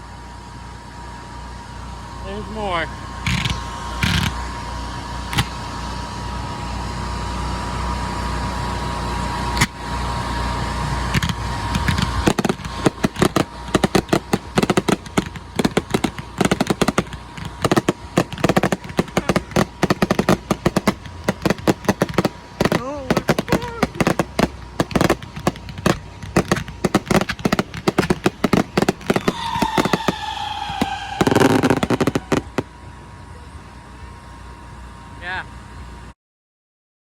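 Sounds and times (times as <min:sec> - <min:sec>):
firework bangs: 0:03.2 - 0:06.1, 0:08.0 - 0:32.8
rapid firework crackles: 0:03.2 - 0:32.9.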